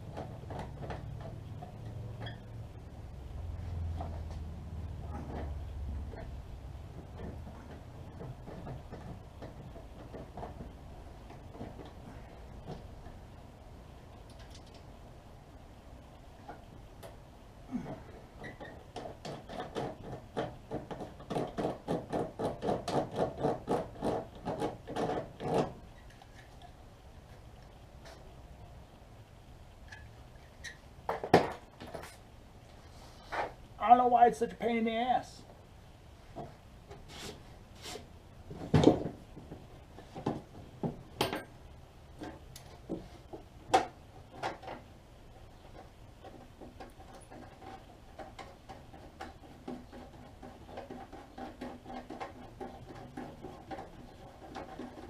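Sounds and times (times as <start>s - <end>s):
hand tool rasping sheet metal: 47.0s - 55.0s.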